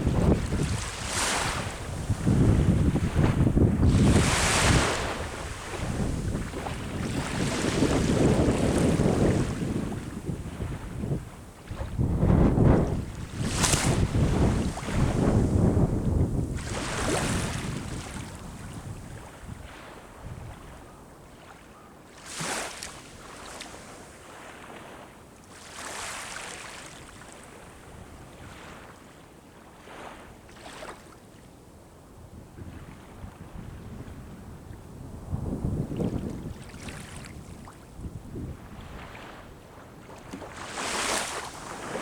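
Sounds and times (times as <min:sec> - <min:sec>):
wind buffeting microphone: 0:00.0 - 0:20.9, 0:32.4 - 0:42.0
sea waves breaking on shore: 0:00.0 - 0:31.4, 0:35.6 - 0:42.0.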